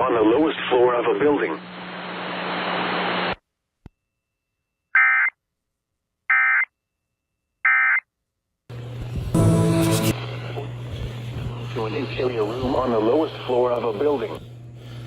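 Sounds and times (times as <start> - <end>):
radio static with low hum: 0.0 - 3.4, 9.2 - 14.6.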